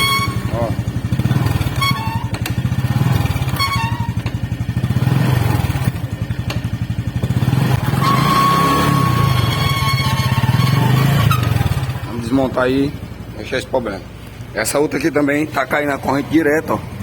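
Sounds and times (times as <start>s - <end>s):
drum brake squealing: 0.0s - 4.8s, 7.6s - 12.0s
small motorcycle engine running: 0.0s - 17.0s.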